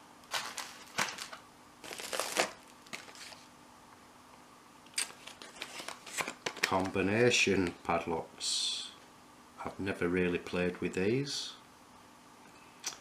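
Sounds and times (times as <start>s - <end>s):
packaging crinkling and rustling: 0.2s - 3.5s, 5.0s - 7.8s.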